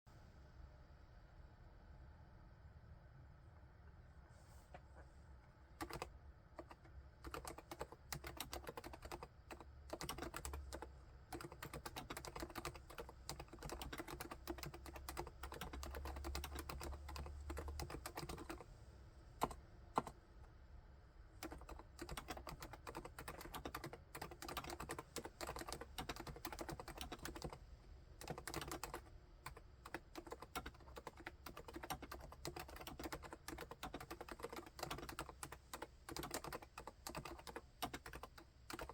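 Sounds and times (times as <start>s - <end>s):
muted keyboard typing: 5.8s - 18.6s, 19.4s - 20.2s, 21.4s - 27.6s, 28.2s - 38.9s
sharp keyboard clacks: 5.8s - 18.6s, 21.4s - 27.6s, 28.2s - 38.9s.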